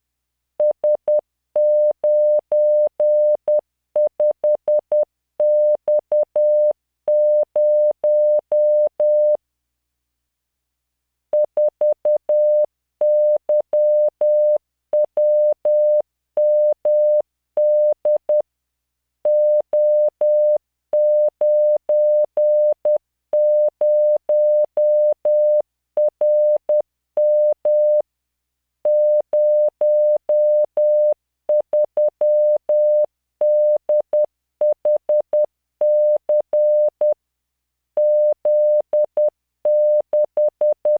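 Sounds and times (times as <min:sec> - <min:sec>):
morse code sine tone: 0:11.4 - 0:18.4, 0:19.3 - 0:28.0, 0:28.9 - 0:37.2, 0:38.0 - 0:40.9.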